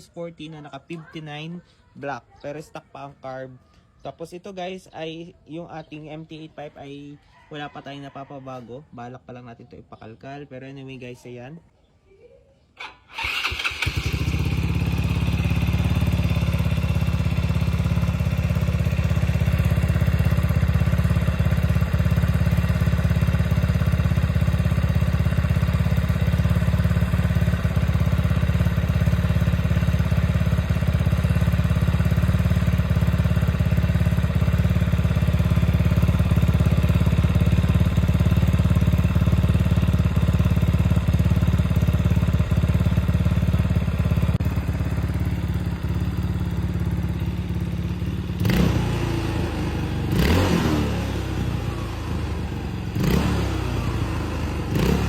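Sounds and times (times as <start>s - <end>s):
scooter engine starting and idling: 12.8s - 55.0s.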